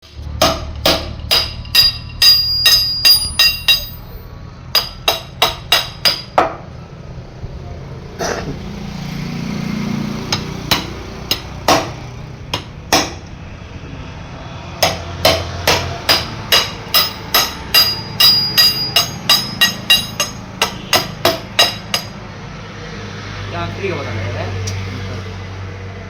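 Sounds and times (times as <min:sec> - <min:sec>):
hammer blows with metallic ring: 0:00.1 - 0:06.7, 0:14.8 - 0:22.2.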